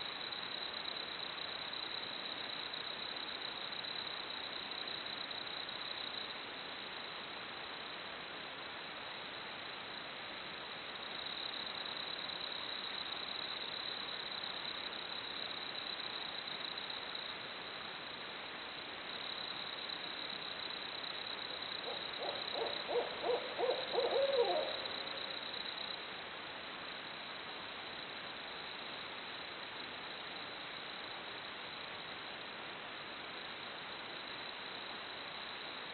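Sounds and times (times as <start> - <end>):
owl hooting: 21.8 - 25.3.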